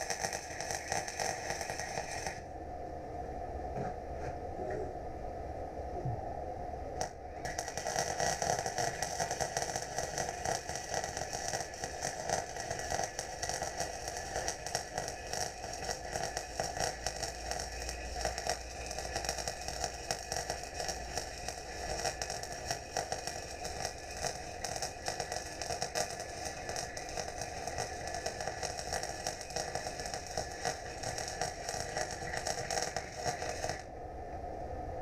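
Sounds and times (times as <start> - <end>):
welding arc crackling: 0.0 - 2.4, 7.0 - 33.9.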